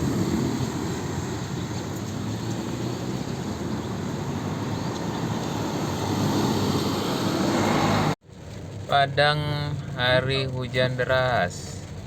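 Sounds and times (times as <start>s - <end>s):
strong wind: 0.0s - 8.1s
heavy rain: 0.0s - 12.0s
vehicle noise: 0.0s - 12.0s.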